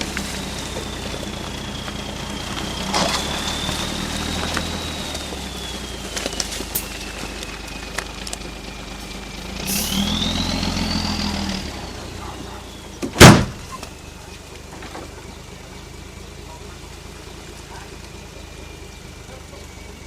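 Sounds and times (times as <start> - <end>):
heavy diesel machine whining: 0.0 - 20.0
loud metallic bang: 13.1 - 13.8.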